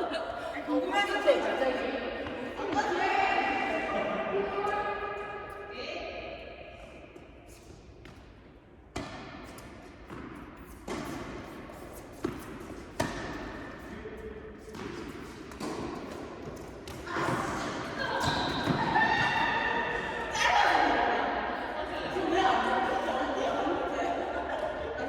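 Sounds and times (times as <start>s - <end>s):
tennis balls struck by rackets: 8.9s - 14.0s, 14.6s - 18.8s
tennis balls bouncing on court: 8.9s - 19.9s.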